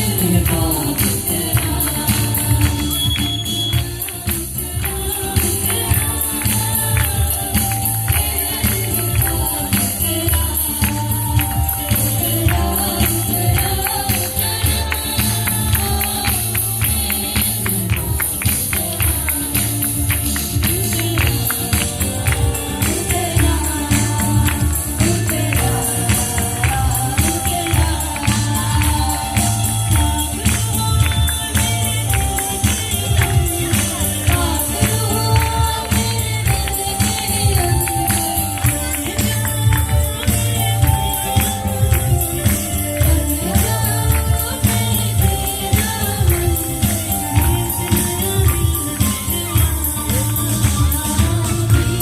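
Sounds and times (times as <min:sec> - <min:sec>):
band playing: 0:00.0 - 0:52.0
heavy bass beat: 0:00.0 - 0:52.0.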